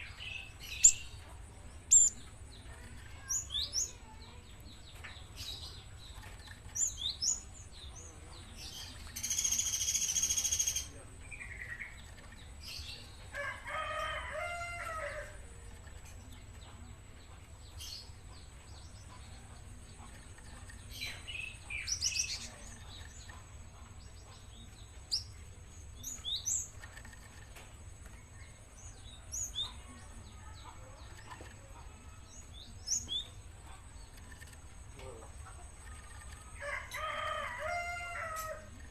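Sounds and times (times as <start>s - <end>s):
songbird chirping: 0.0s - 38.9s
rooster crowing: 13.4s - 15.4s, 36.6s - 38.7s.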